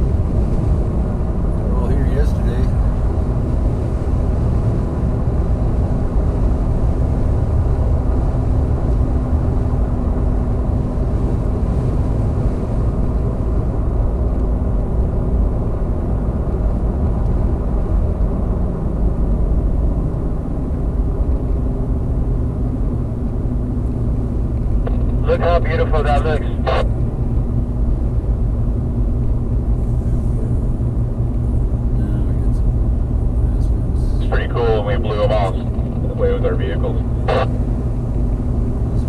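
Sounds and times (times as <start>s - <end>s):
vehicle engine and road rumble: 0.0s - 39.0s
faint steady hum: 22.1s - 39.0s.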